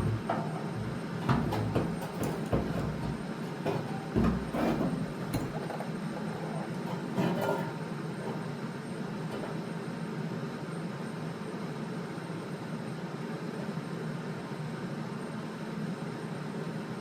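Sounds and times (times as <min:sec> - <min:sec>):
low thuds: 0:00.0 - 0:05.6
metal knocks and rattles: 0:00.0 - 0:08.5.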